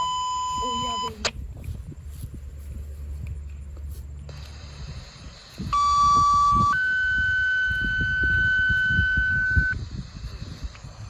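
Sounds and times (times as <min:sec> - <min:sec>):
two-tone paging alert tones: 0:00.0 - 0:01.2, 0:05.7 - 0:09.8.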